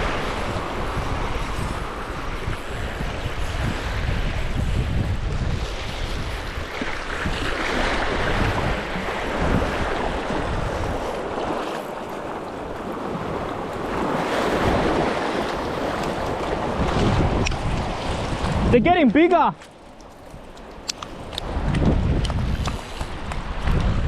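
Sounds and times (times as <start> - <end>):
small waves washing ashore: 0.0 - 24.0
wind buffeting microphone: 0.0 - 24.0.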